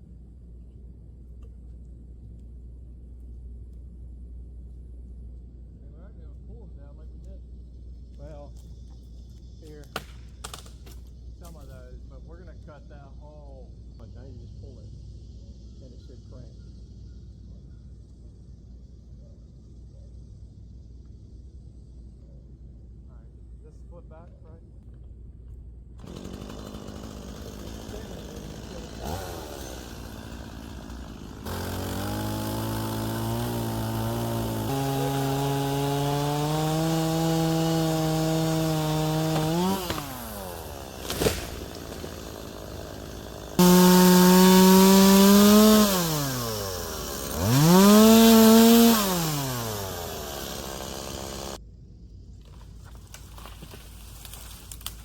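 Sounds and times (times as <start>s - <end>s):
chainsaw engine revving: 26.0s - 51.6s.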